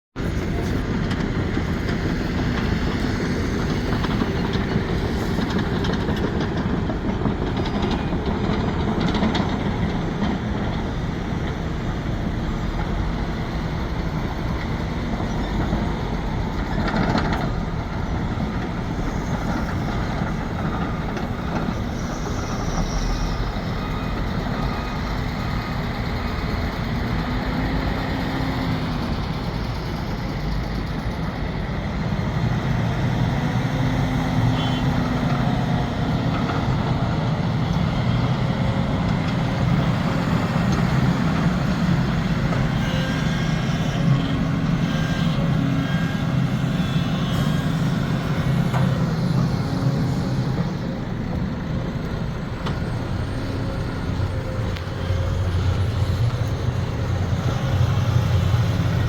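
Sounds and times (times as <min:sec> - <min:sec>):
excavator running: 0:00.2 - 0:59.0.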